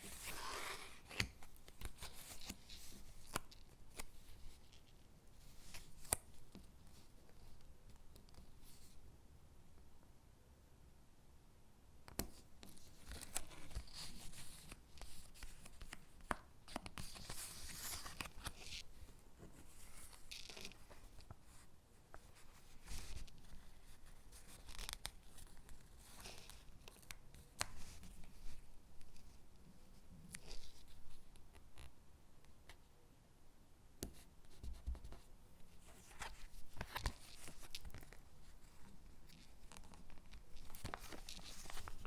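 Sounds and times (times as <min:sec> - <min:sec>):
paper rustling: 0:35.8 - 0:42.0.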